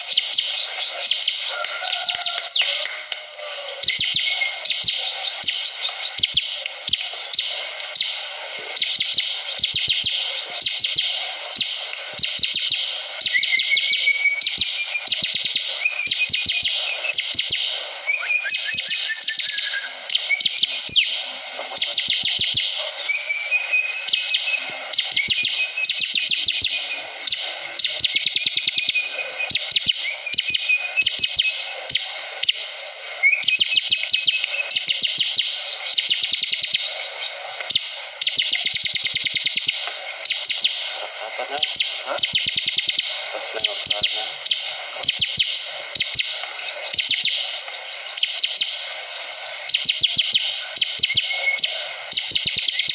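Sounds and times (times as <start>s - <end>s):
bird chattering trill: 0.0s - 52.9s.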